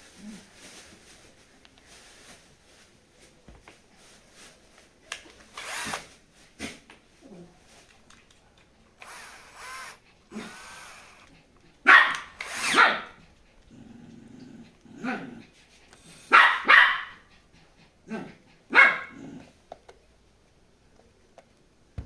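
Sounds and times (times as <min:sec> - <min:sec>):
dog barking: 0:11.8 - 0:13.2, 0:16.3 - 0:17.3, 0:18.1 - 0:19.2.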